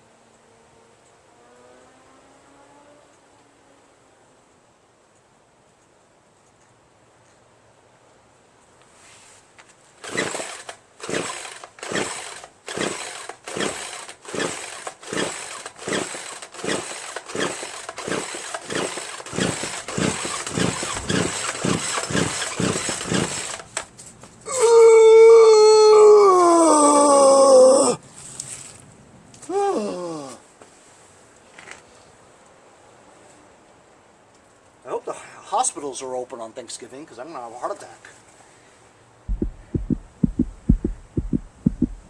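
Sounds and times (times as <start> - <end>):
chainsaw recoil starter whirring: 10.0 - 23.8.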